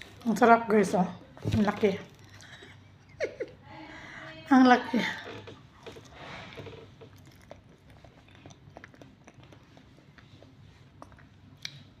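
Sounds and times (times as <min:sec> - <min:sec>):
person chewing: 0:02.1 - 0:02.6, 0:05.7 - 0:12.0.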